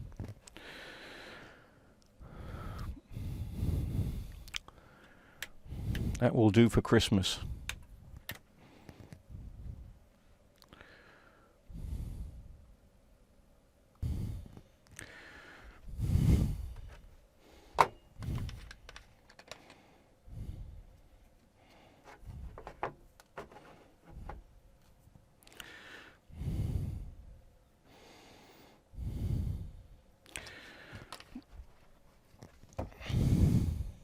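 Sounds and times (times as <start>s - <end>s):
heavy breathing: 0.5s - 6.2s, 8.5s - 10.0s, 10.7s - 12.6s, 14.0s - 22.7s, 25.4s - 31.8s, 32.7s - 34.0s
clicks of parts being handled: 17.8s - 19.8s, 30.3s - 31.5s.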